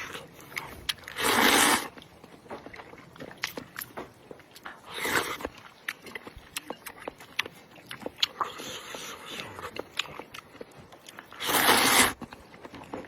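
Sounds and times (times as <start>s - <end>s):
slurping noodles: 0.0s - 1.9s, 4.7s - 5.5s, 8.3s - 9.8s, 11.3s - 12.3s
chewing with mouth clicks: 0.0s - 13.0s.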